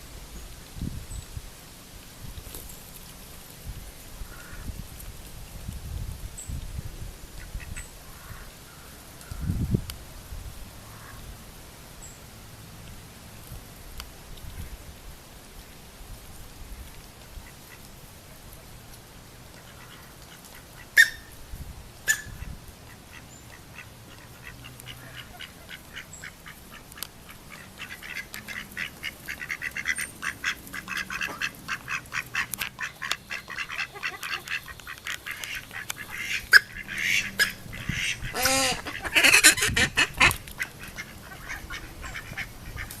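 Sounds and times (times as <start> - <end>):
duck call: 27.5 - 43.0
duck coughing: 38.3 - 40.3.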